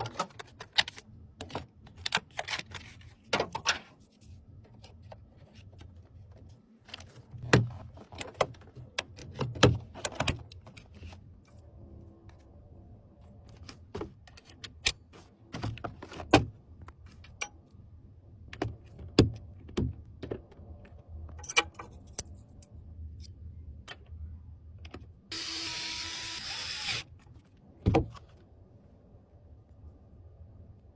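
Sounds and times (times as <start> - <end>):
computer hardware clicks and knocks: 21.3 - 22.4.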